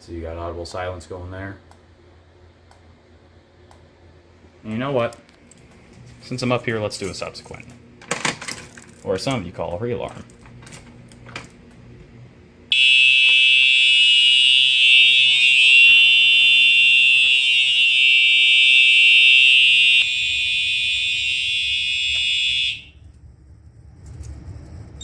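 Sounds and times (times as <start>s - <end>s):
high-pitched fire alarm tone: 12.7s - 23.2s.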